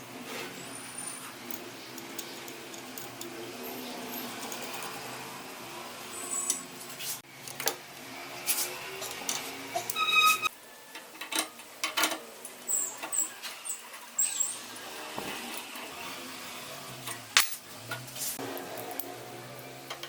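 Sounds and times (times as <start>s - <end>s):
metallic ring: 9.8s - 10.5s
tools clicking and knocking: 10.9s - 12.2s.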